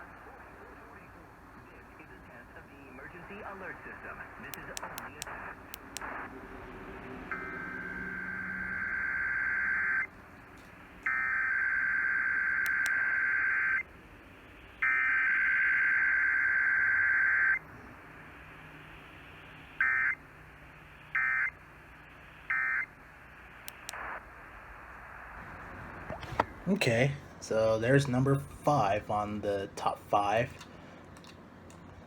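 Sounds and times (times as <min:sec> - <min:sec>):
faint radio hiss: 0:00.0 - 0:32.0.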